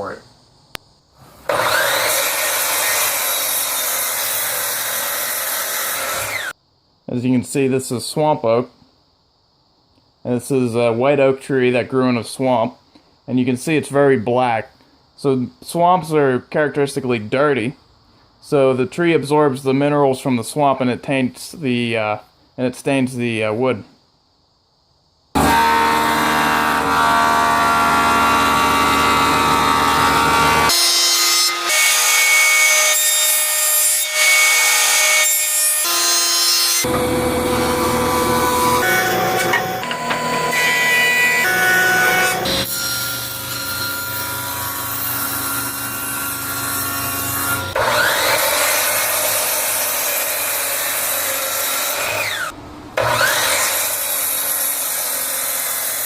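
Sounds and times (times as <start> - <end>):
power tools cutting wood: 1.2 - 6.6, 25.4 - 56.0
machine whine: 36.8 - 43.9.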